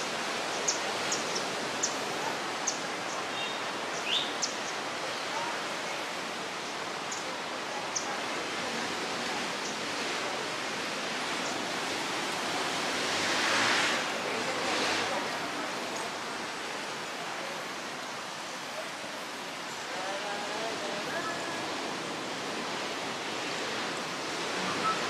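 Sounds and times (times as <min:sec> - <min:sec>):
wind on a beach: 0:00.0 - 0:25.0
surf rushing: 0:08.4 - 0:25.0.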